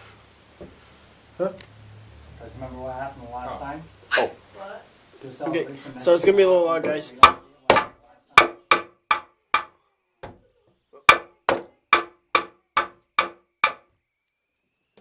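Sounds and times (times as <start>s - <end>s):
hammer striking plaster: 6.8s - 10.4s, 11.1s - 13.9s.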